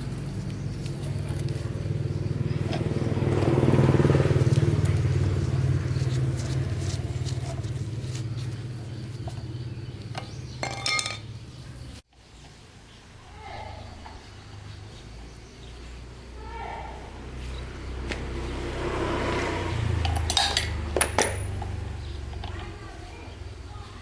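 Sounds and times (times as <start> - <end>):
diesel engine running: 0.0 - 12.0, 16.6 - 24.0
metallic clink: 10.2 - 11.3, 20.0 - 21.8.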